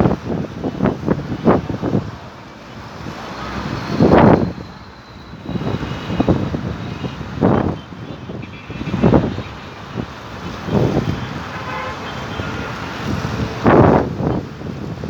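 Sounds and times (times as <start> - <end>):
wind gusting against microphone: 0.0 - 15.0.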